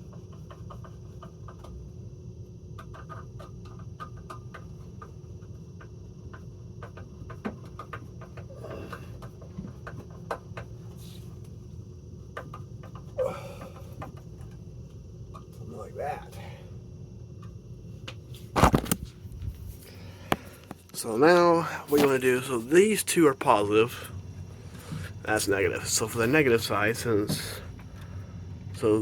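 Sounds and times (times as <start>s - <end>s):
hands clicking and knocking plastic: 2.8s - 11.5s
steady low rumble: 14.5s - 29.0s.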